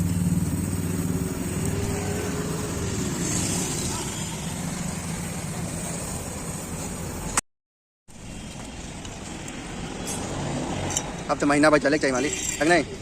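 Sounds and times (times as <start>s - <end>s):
vehicle engine running: 0.0s - 7.3s
street traffic noise: 0.0s - 7.4s, 8.1s - 13.0s.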